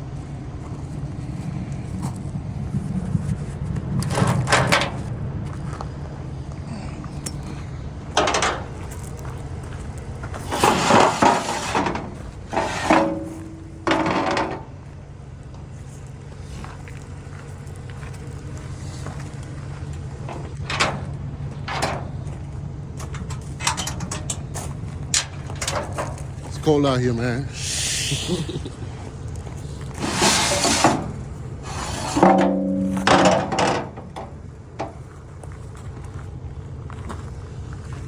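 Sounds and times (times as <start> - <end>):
engine idling: 0.0 - 38.0
metal clanks and bangs: 4.0 - 5.1, 7.2 - 9.3, 10.2 - 14.9, 19.7 - 27.1, 29.8 - 35.4.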